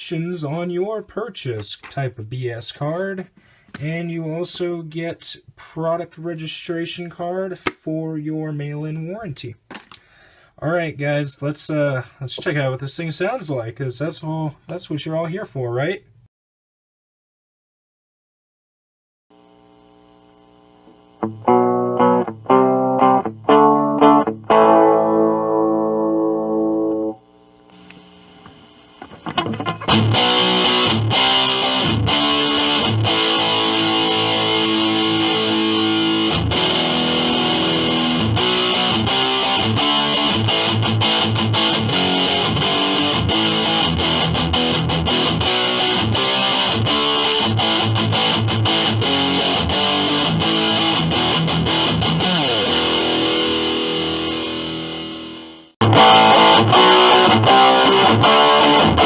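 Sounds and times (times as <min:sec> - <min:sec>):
distorted electric guitar riff: 0:19.4 - 0:59.0.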